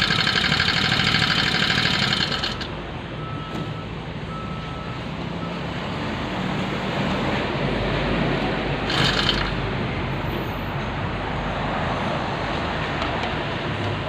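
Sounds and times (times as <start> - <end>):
grass cutter engine running: 0.0 - 2.7, 8.9 - 9.6.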